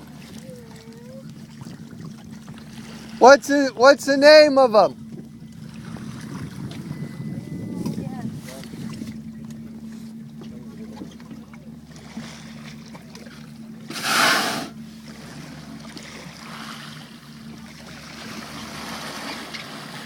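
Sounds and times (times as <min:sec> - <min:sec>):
boat engine idling: 0:00.0 - 0:20.0
whale blow whoosh: 0:13.9 - 0:14.8.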